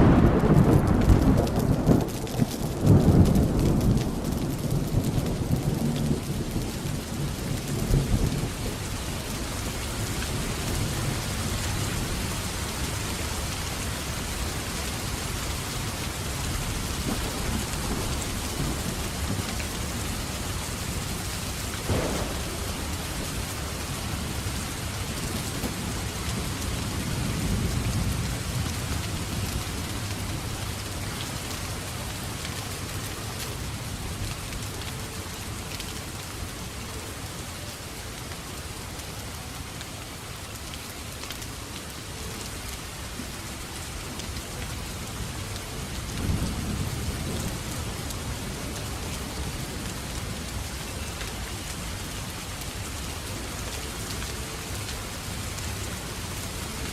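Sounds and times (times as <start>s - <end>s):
thunder rolling: 0.0s - 6.2s, 21.8s - 26.0s
heavy rain falling: 0.0s - 56.9s.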